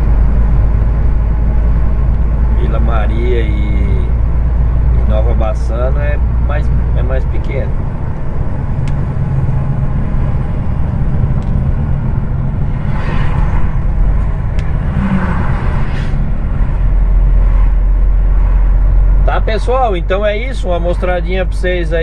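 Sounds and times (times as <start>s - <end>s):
road rumble: 0.0s - 22.0s
truck engine drone: 0.0s - 22.0s
rushing noise: 7.8s - 19.6s.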